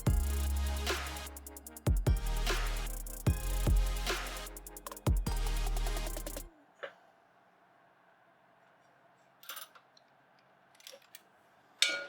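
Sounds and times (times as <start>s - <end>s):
electronic beat with heavy bass: 0.0s - 6.5s.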